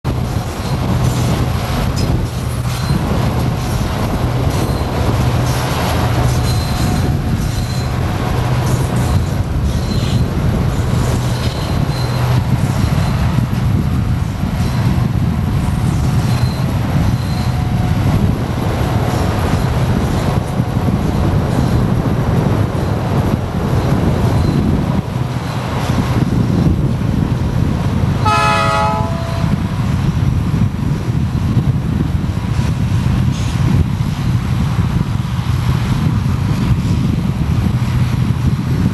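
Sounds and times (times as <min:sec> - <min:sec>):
freight train rumbling: 0:00.0 - 0:38.9
faint high wheel squeals: 0:02.0 - 0:03.0, 0:04.4 - 0:13.5, 0:14.5 - 0:15.0, 0:15.8 - 0:18.3, 0:23.8 - 0:24.8
train horn blast: 0:28.2 - 0:29.7.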